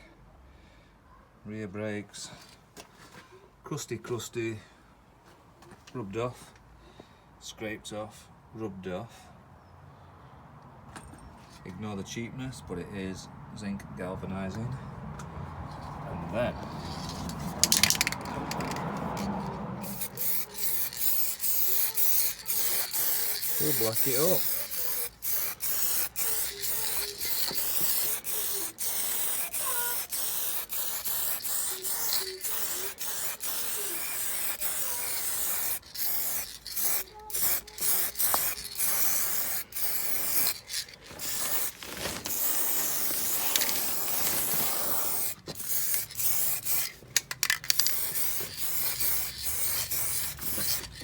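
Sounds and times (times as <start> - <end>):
spray paint hissing: 16.6 - 51.0.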